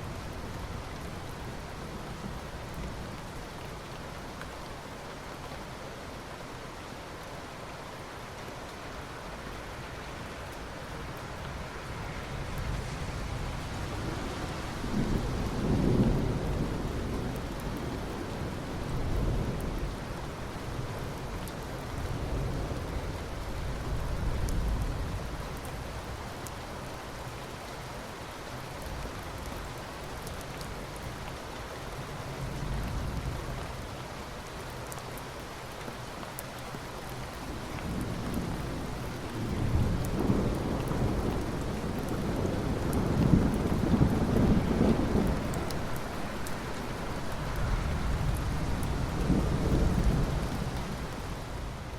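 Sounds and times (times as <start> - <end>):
steady rain: 0.0 - 51.9
thunder rumbling: 37.8 - 51.2.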